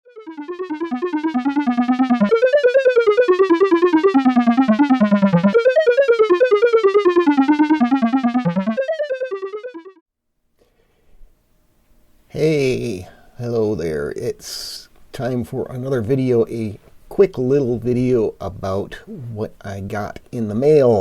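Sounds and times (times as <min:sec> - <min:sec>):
pulsing synthesizer melody: 0:00.0 - 0:10.0.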